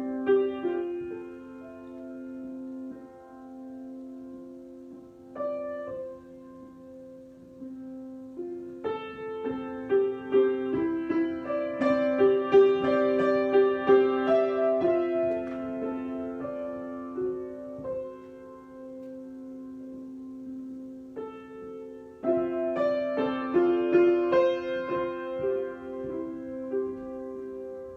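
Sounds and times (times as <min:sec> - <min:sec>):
solo piano improvisation: 0:00.0 - 0:27.9.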